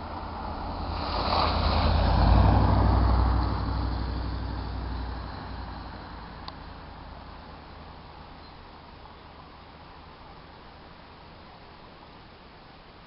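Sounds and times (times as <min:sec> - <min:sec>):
vehicle driving past: 0:00.0 - 0:07.1.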